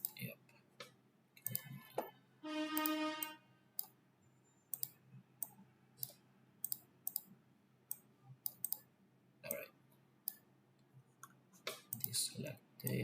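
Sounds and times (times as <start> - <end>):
computer mouse clicking: 0.0 - 0.2, 0.8 - 1.7, 2.8 - 4.0, 4.7 - 7.3, 7.9 - 8.9.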